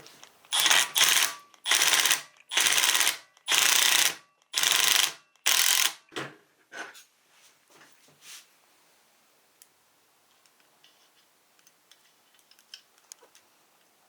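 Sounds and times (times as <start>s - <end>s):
ratchet wrench clicking: 0.5s - 6.0s.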